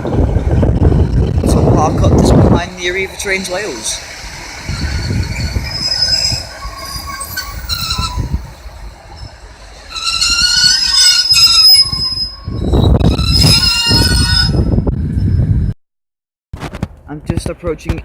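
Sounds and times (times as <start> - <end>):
train wheels squealing: 4.4 - 15.7.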